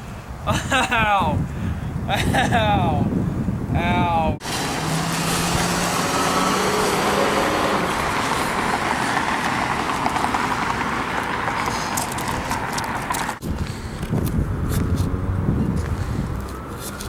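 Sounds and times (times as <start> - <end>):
road traffic noise: 0.0 - 17.0
large vehicle engine hum: 4.4 - 17.0.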